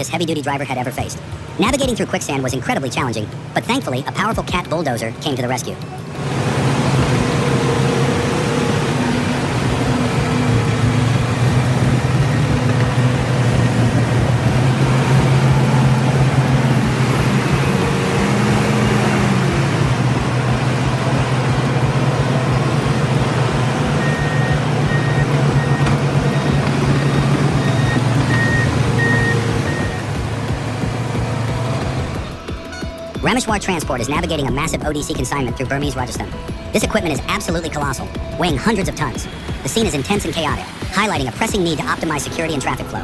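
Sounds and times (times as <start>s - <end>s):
heavy diesel engine droning: 0.0s - 43.0s
reversing alarm beeps: 23.8s - 30.0s.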